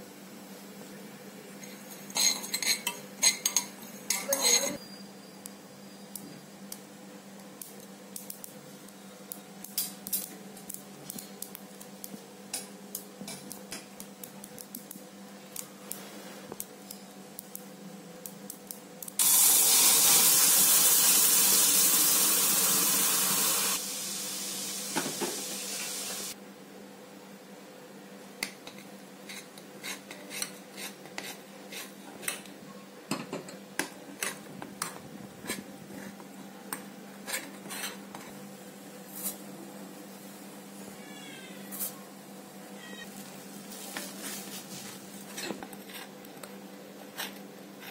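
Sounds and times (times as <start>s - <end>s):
metal utensils clinking on pots: 1.9s - 4.8s
loud steady hiss: 19.1s - 26.4s.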